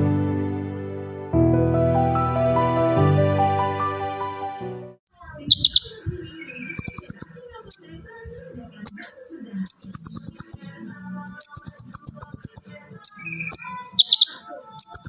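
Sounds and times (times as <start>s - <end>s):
background music: 0.0s - 5.0s
sunbird singing trilled phrases: 5.1s - 8.0s, 8.9s - 10.8s, 11.4s - 15.0s.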